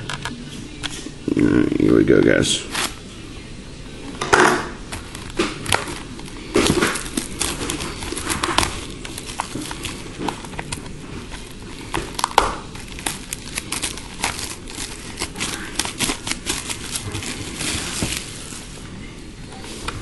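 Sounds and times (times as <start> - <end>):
plastic wrap crinkling: 4.8 - 19.1.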